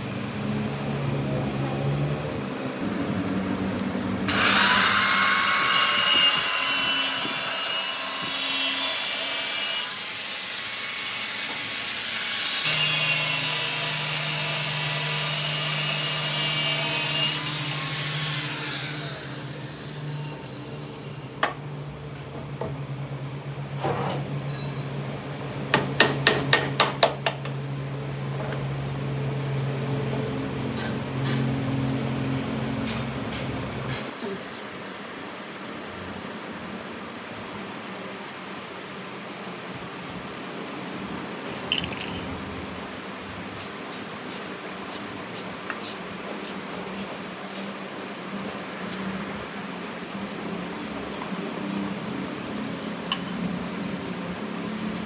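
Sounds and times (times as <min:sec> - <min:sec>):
power grinder on metal: 0:04.3 - 0:21.3.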